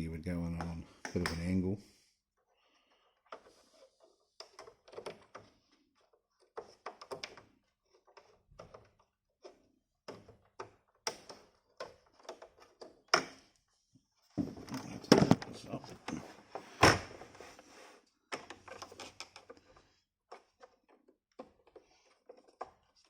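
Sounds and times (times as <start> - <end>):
hands handling plastic and metal parts: 14.3 - 17.7.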